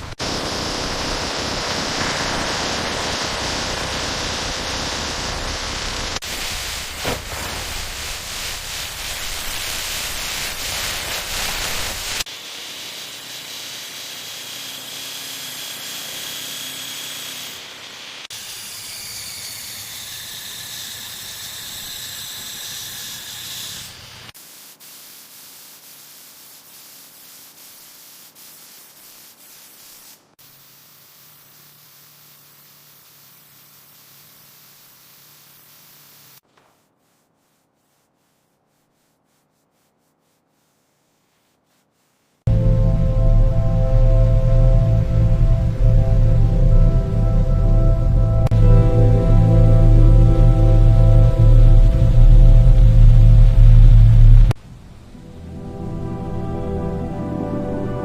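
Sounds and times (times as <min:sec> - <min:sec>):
spraying hiss: 0:00.0 - 0:42.9.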